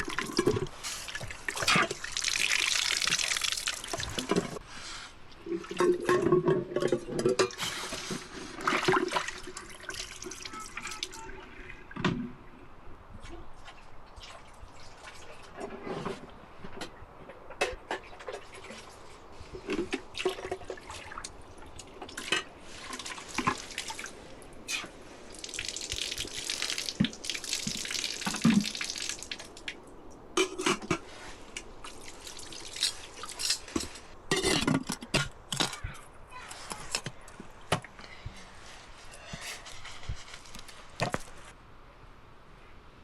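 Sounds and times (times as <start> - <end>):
water splashing and pouring: 0.0 - 4.6, 5.4 - 12.3, 13.5 - 15.9, 17.9 - 35.8.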